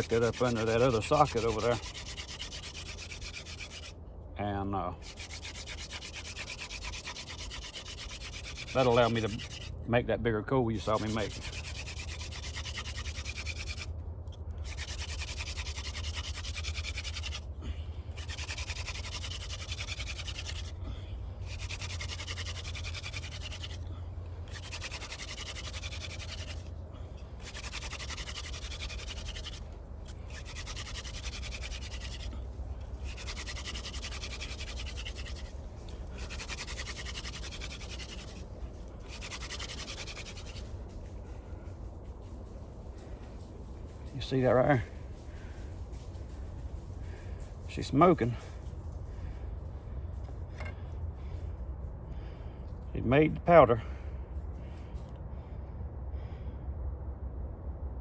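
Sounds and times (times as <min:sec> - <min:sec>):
wooden spindle rasping on fireboard: 0:00.0 - 0:04.0, 0:05.0 - 0:09.8, 0:10.8 - 0:13.9, 0:14.6 - 0:17.5, 0:18.1 - 0:40.8
steady low rumble: 0:00.0 - 0:58.0.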